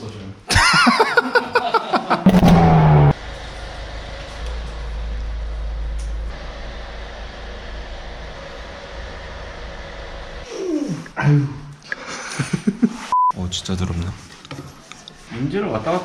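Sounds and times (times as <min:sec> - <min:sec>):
steady low rumble: 0:02.3 - 0:04.0.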